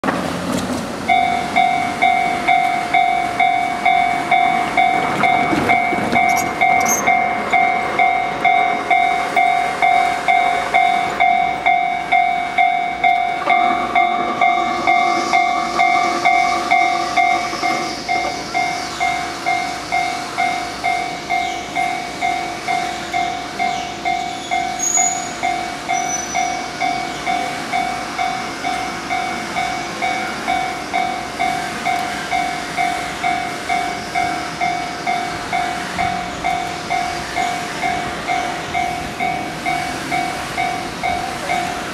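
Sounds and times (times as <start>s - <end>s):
level crossing bell ringing: 1.1s - 24.8s
steady higher tone: 1.1s - 41.9s.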